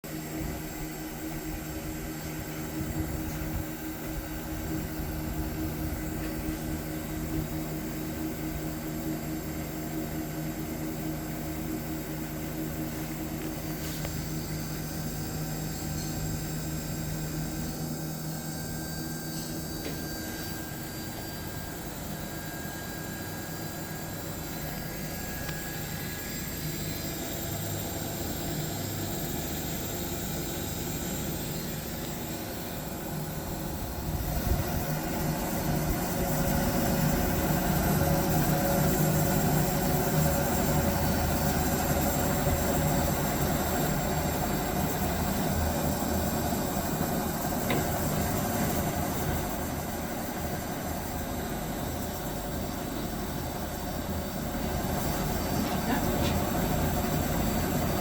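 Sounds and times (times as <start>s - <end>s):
machine low hum: 0.1s - 58.0s
machine whirring: 12.3s - 58.0s.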